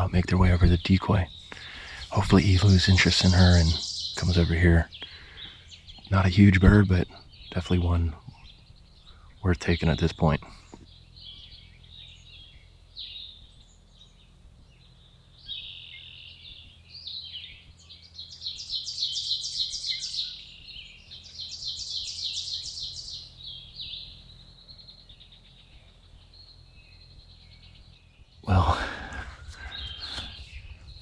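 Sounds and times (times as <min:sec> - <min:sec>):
loud bird trills: 0:00.0 - 0:06.2, 0:18.1 - 0:25.5, 0:28.5 - 0:30.8
songbirds singing and chirping: 0:00.0 - 0:31.0.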